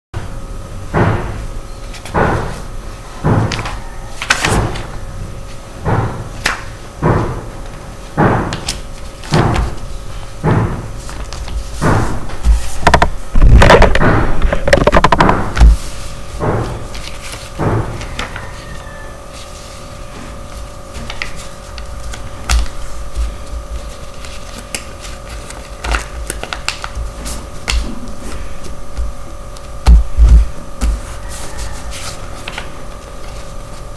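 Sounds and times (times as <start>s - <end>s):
steady background hum: 0.2s - 33.9s
paper crackling: 11.0s - 33.9s.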